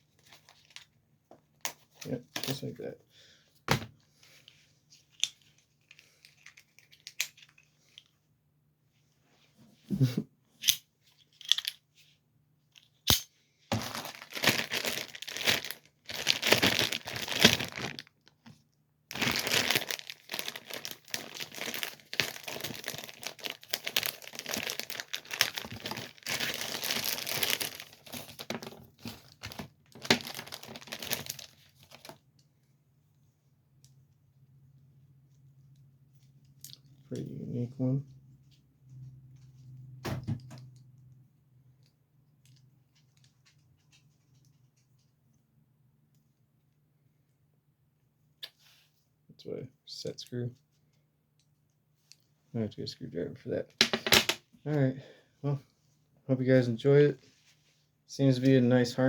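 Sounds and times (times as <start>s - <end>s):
plastic packaging crinkling and tearing: 13.7s - 18.4s, 19.1s - 32.2s.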